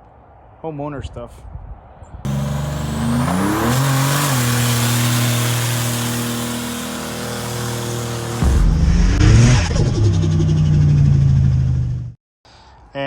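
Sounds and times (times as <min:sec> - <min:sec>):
car engine starting: 0:02.3 - 0:12.0.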